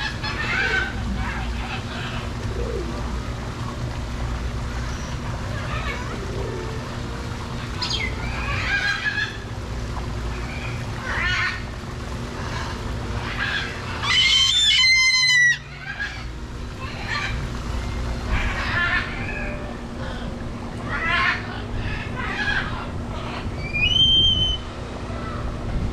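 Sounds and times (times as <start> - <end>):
macaws squawking: 0.0 - 3.0, 7.8 - 9.6, 12.4 - 24.6.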